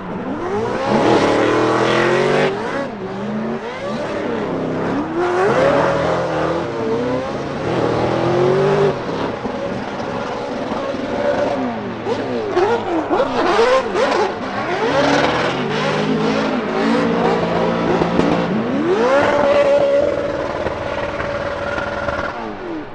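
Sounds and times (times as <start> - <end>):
car engines revving: 0.0 - 22.9.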